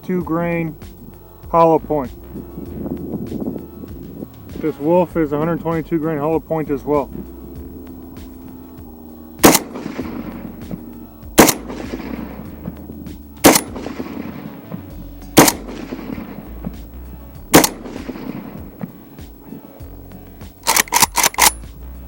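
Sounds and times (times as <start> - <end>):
rifle shots with echo: 9.4 - 19.6, 20.6 - 21.6.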